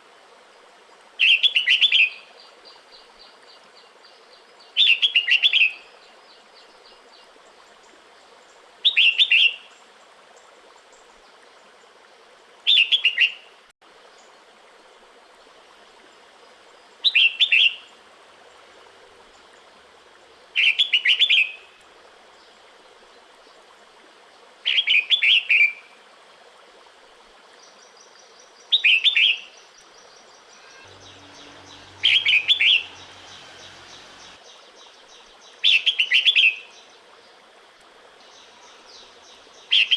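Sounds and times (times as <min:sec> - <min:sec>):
bulbul chattering calls: 0:30.4 - 0:34.4.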